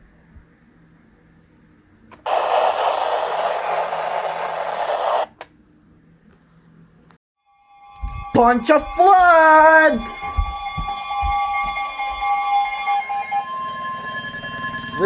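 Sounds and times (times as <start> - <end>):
radio static hiss: 2.3 - 5.4.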